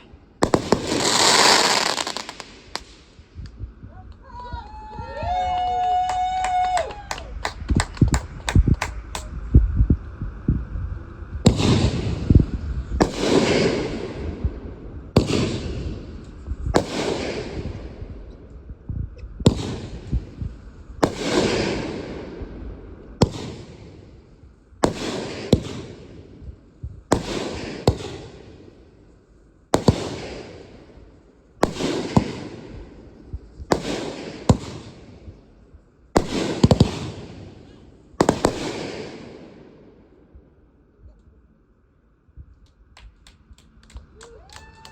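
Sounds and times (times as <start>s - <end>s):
fireworks cracks and bangs: 0.0s - 3.8s, 4.4s - 10.1s, 11.4s - 28.8s, 29.7s - 41.2s
rumble after bangs: 7.4s - 28.6s.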